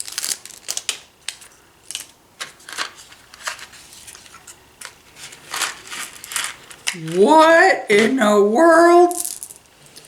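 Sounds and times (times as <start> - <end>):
packaging crinkling: 0.0 - 4.2.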